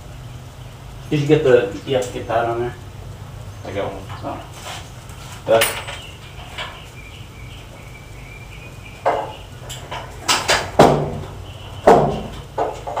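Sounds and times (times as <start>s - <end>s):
metal parts knocking and clanking: 5.5s - 6.8s
sharp metal hits: 5.5s - 6.8s.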